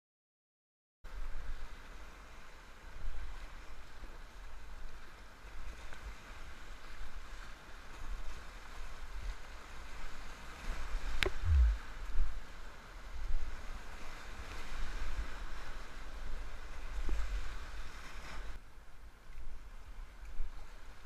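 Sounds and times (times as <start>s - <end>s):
muffled river whitewater rumble: 1.1s - 21.0s
low thump: 11.2s - 11.8s
sharp knock: 11.2s - 11.8s.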